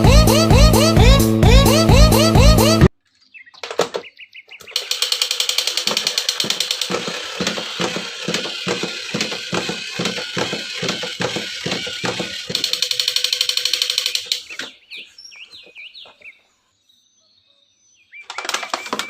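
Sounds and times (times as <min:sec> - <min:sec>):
handling clicks: 0:03.6 - 0:14.8
toy mechanical clicking: 0:04.6 - 0:14.7.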